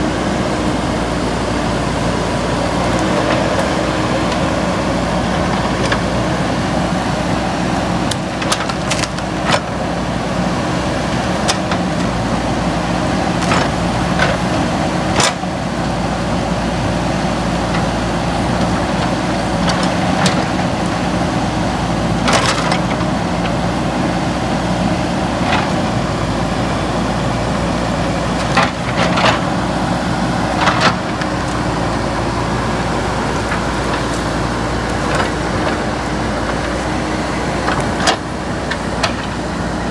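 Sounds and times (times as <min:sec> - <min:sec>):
diesel engine running under load: 0:00.0 - 0:39.9
sharp knocks and cracks: 0:08.1 - 0:09.7.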